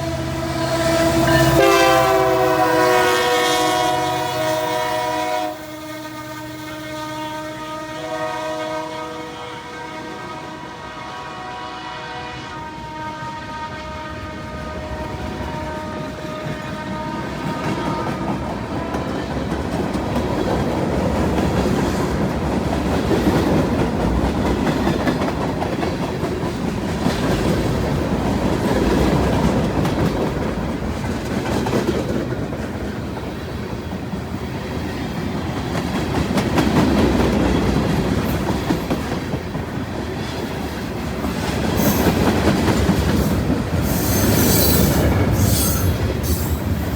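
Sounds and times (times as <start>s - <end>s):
train horn howl: 0.0s - 19.8s
freight train cars rumbling: 0.0s - 46.9s.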